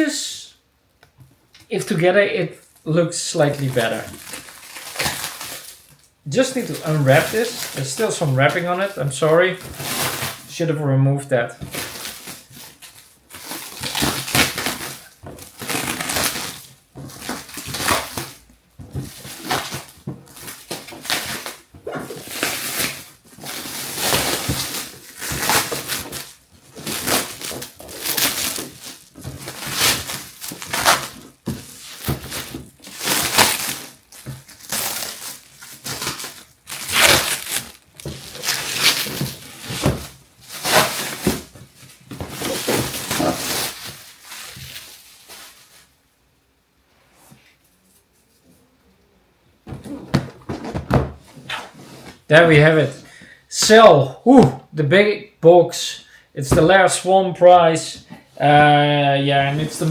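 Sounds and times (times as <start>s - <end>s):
plastic shrink wrap tearing: 3.3s - 10.6s, 11.6s - 45.9s, 58.5s - 59.9s.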